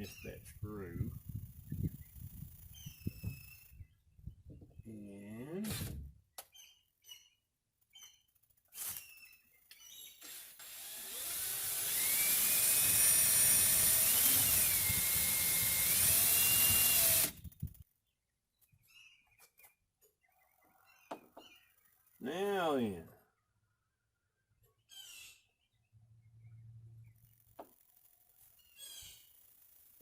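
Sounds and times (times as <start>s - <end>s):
power drill driving screw into metal: 5.6s - 6.1s, 8.8s - 9.1s, 10.2s - 17.5s.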